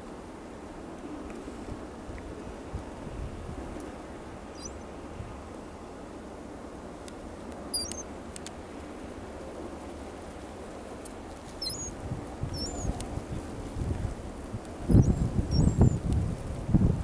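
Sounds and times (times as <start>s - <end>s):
wind noise on microphone: 1.5s - 5.4s, 11.4s - 17.0s
birds chirping: 4.5s - 4.9s, 7.7s - 8.1s, 11.5s - 13.0s, 14.8s - 16.0s.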